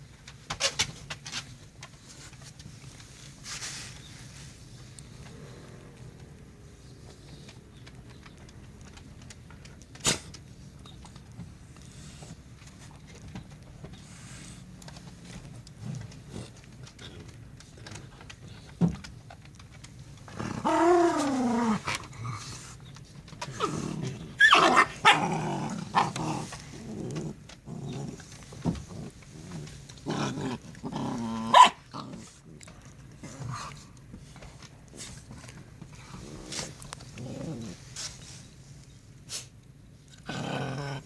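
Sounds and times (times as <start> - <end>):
dogs growling and barking: 11.2 - 38.1, 40.1 - 41.0
dog crying: 24.4 - 25.3
dog yelping: 24.4 - 26.2, 31.5 - 31.9.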